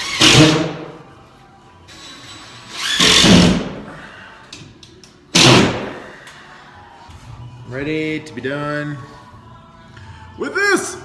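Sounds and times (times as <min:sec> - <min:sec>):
power drill driving screws: 0:00.0 - 0:00.6, 0:02.7 - 0:03.6.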